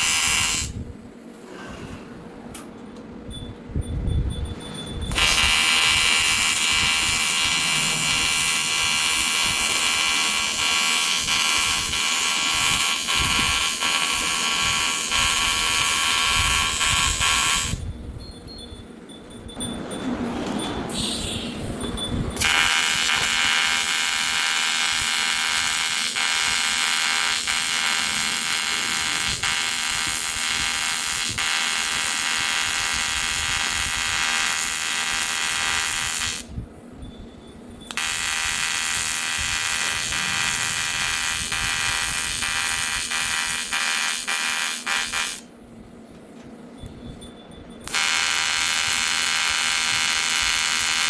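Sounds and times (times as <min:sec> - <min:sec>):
welding arc buzzing: 0:00.0 - 0:00.8, 0:05.1 - 0:17.9, 0:22.4 - 0:36.6, 0:37.9 - 0:45.6, 0:47.8 - 0:51.0.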